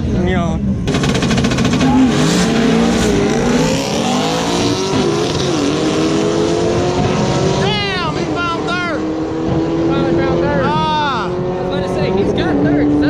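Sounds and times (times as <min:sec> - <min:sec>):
racing car engines at full throttle: 0:00.0 - 0:13.0.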